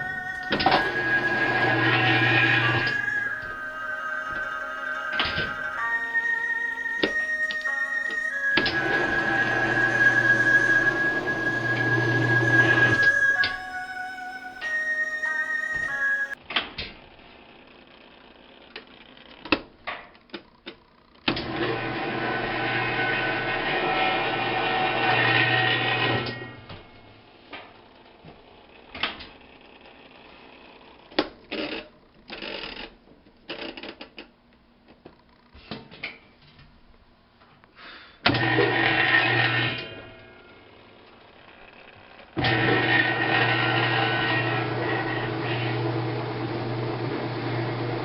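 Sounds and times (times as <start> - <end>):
washing machine motor humming: 0.0 - 16.4, 42.4 - 48.0.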